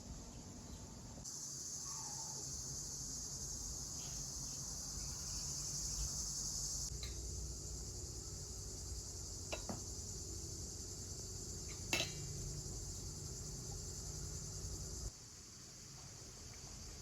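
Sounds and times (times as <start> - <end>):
crickets chirring: 0.0 - 17.0
sharp clink: 11.9 - 12.3.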